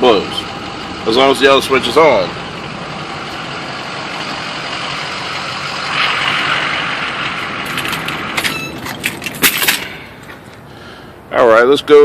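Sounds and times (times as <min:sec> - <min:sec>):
pickup truck engine idling: 0:00.0 - 0:11.3
hissing swell: 0:05.2 - 0:08.4.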